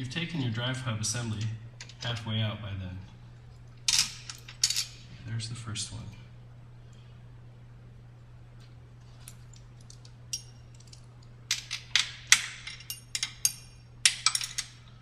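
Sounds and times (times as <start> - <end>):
faint low hum: 0.0 - 15.0
metal tools clinking: 3.9 - 5.0, 9.2 - 14.8.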